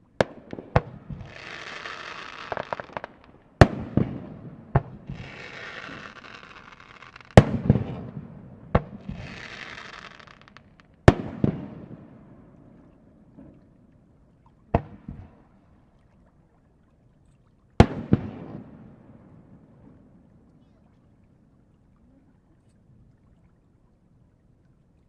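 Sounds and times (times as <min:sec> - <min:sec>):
hissing crackle: 0:01.2 - 0:03.3, 0:05.1 - 0:07.4, 0:09.1 - 0:11.0.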